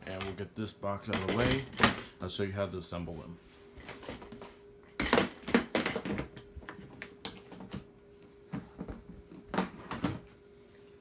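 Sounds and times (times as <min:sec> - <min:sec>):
faint steady hum: 0:00.0 - 0:11.0
hard objects clattering: 0:01.1 - 0:02.1.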